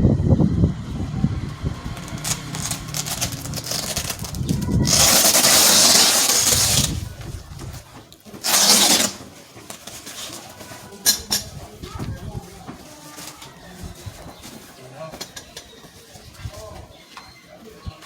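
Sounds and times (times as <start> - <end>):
loud rustling scrape: 1.7 - 14.9.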